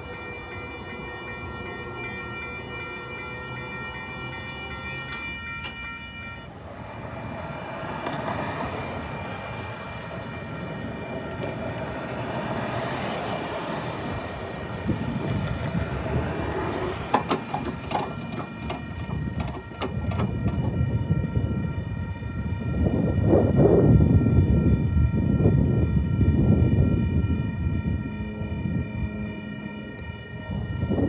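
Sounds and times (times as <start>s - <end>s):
train horn: 0.0s - 31.0s
train rumbling past: 0.0s - 31.0s
wheels clicking over rail joints: 6.6s - 21.3s.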